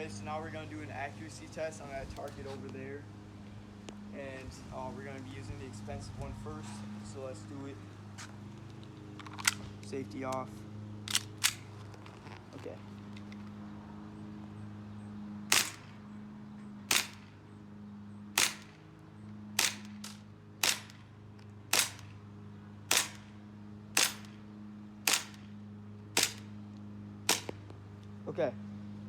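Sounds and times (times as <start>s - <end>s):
airsoft pistol shots: 15.5s - 16.0s, 16.9s - 17.3s, 18.4s - 18.8s, 19.6s - 21.0s, 21.7s - 22.2s, 22.9s - 23.4s, 24.0s - 24.4s, 25.0s - 25.5s, 26.2s - 26.5s, 27.3s - 27.6s.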